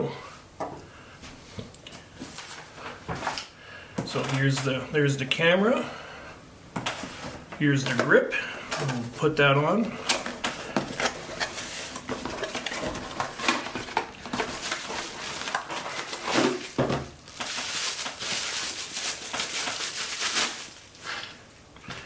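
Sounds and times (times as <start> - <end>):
clicks and knocks of handling: 1.6 - 4.7
packaging rustling: 6.8 - 22.0.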